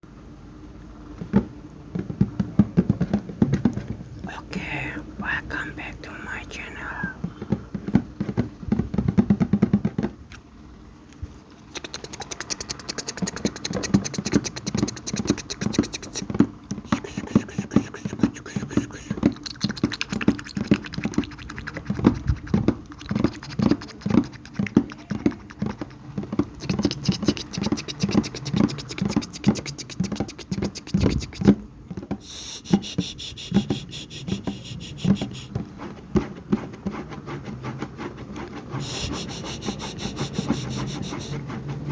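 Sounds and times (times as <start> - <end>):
mouth clicks and pops: 11.6 - 31.6, 32.2 - 35.6.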